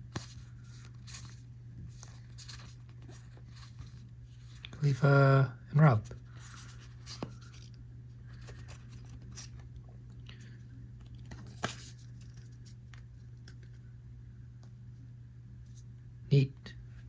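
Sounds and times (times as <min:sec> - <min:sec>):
cards sliding and scraping: 0:00.0 - 0:05.0, 0:06.3 - 0:09.7, 0:11.1 - 0:13.8
steady low hum: 0:00.0 - 0:17.0.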